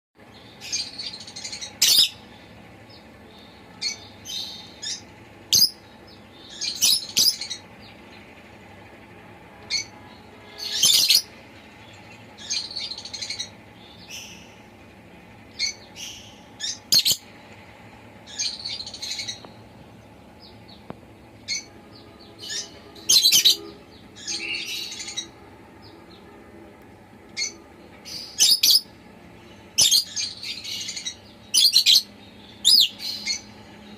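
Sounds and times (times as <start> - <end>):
faint background hum: 0.2 - 33.9
lovebird chirping: 29.6 - 33.5.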